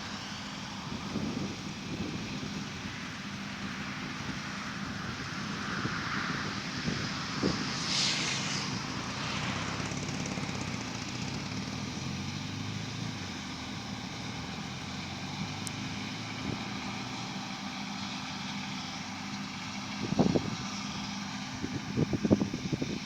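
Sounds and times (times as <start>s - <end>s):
diesel engine drone: 0.0s - 23.0s
brief hiss: 7.0s - 11.0s.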